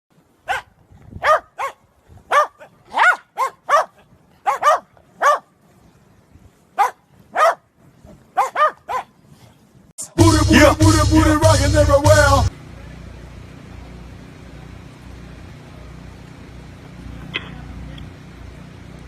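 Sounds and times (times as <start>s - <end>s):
dog barking: 0.4s - 5.5s, 6.8s - 7.6s, 8.4s - 9.1s.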